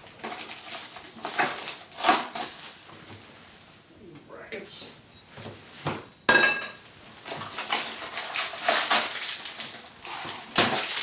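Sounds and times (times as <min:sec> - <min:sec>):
hardware rustling and clattering: 0:06.3 - 0:11.0.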